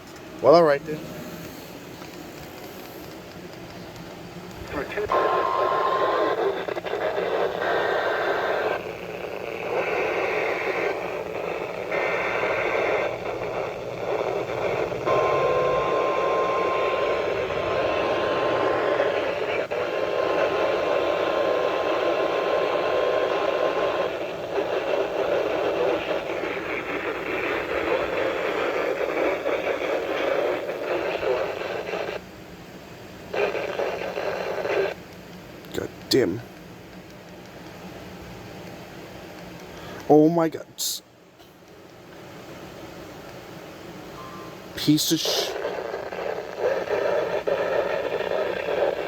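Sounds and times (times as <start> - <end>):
radio static: 0.4 - 32.3, 33.2 - 35.1, 35.7 - 36.6, 44.6 - 49.0.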